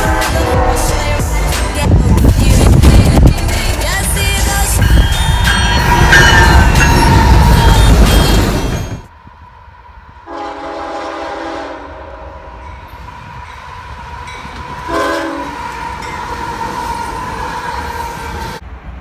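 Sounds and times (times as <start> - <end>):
locomotive air horn chord: 0.0 - 1.8, 10.2 - 12.7, 14.9 - 16.2.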